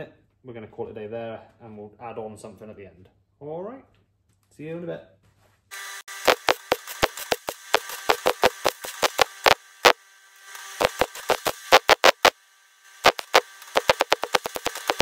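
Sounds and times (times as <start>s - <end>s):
welder steady hum: 5.7s - 15.0s
welder sharp pops: 6.2s - 10.0s, 10.8s - 12.3s, 13.0s - 15.0s.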